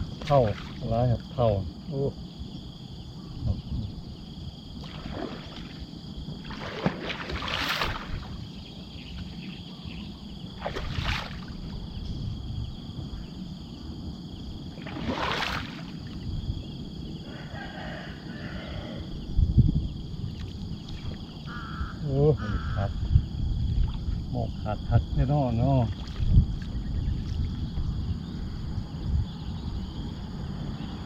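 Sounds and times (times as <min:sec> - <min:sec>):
water splashing and sloshing: 0:00.0 - 0:01.3, 0:04.7 - 0:09.7, 0:10.3 - 0:11.9, 0:14.5 - 0:16.6, 0:20.3 - 0:21.6, 0:23.6 - 0:24.4, 0:25.6 - 0:27.9
insects chirring: 0:00.0 - 0:31.0.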